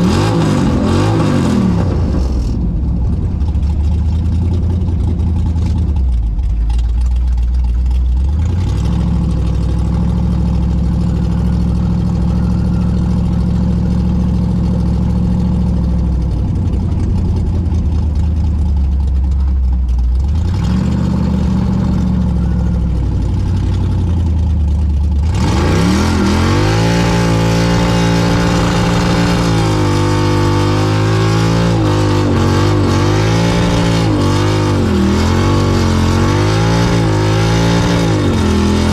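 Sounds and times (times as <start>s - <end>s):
car engine revving: 0.0s - 38.9s.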